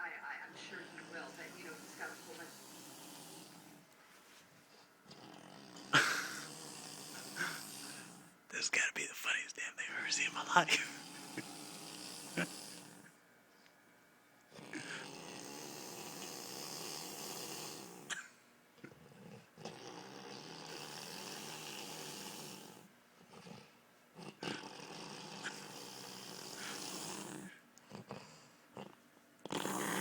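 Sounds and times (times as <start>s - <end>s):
man snoring: 0.8s - 3.8s, 5.0s - 8.9s, 9.6s - 13.2s, 14.5s - 18.2s, 19.1s - 23.6s, 24.2s - 28.3s, 29.4s - 30.0s
short snorts: 4.7s - 8.4s, 10.7s - 13.2s, 14.5s - 30.0s.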